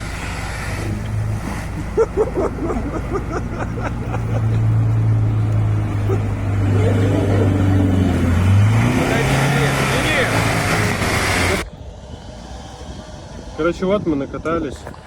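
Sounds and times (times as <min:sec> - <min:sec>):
car engine running: 0:00.0 - 0:11.7.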